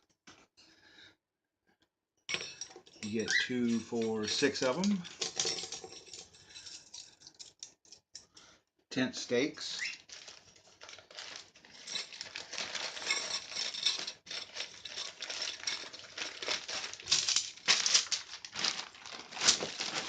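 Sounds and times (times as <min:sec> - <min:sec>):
tent fabric crinkling and rustling: 0:09.8 - 0:13.6, 0:14.4 - 0:20.0.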